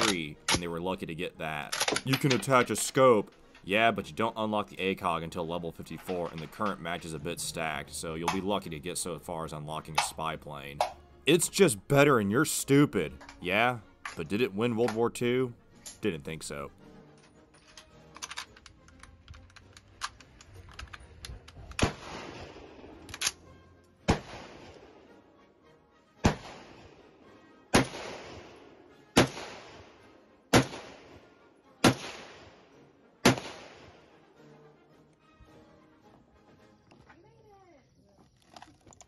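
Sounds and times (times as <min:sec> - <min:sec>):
rifle shots with echo: 0:21.7 - 0:23.2, 0:24.0 - 0:25.0, 0:26.2 - 0:27.1, 0:27.7 - 0:31.2, 0:31.8 - 0:32.6, 0:33.2 - 0:34.0.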